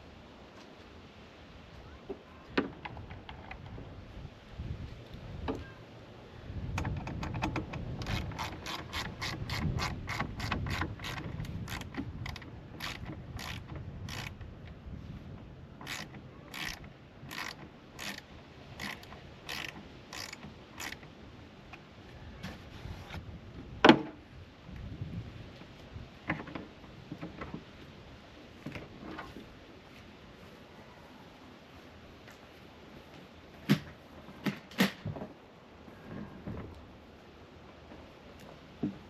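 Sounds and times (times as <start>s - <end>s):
socket ratchet clicking: 6.8s - 14.4s, 15.8s - 21.0s.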